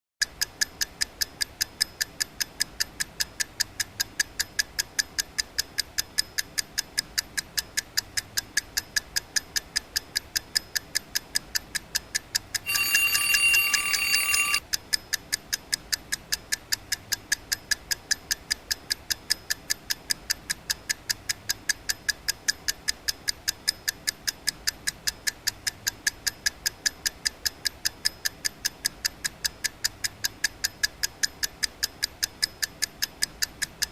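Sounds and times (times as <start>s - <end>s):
alarm clock ticking: 12.7s - 14.6s
shrill alarm ringing: 12.7s - 14.6s.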